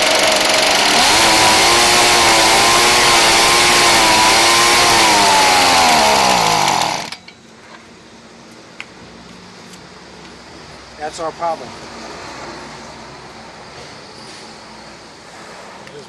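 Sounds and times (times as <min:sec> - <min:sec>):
small gas engine running: 0:00.0 - 0:07.2.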